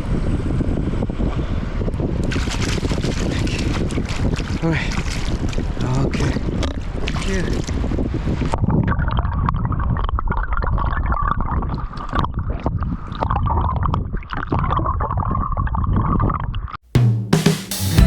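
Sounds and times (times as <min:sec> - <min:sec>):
river water gurgling and splashing: 0:02.2 - 0:13.7.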